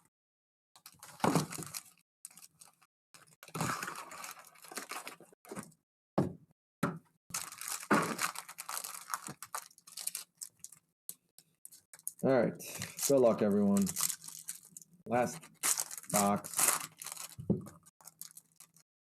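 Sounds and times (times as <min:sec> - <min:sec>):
plastic wrapping tearing and crinkling: 0:00.8 - 0:05.2, 0:07.3 - 0:10.8, 0:12.8 - 0:18.8.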